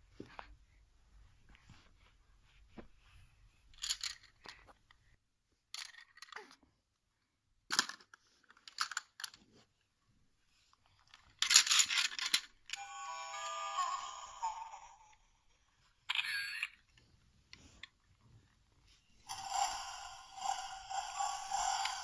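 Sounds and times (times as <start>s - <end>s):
objects rustling and clicking: 7.7s - 9.7s, 10.7s - 12.8s.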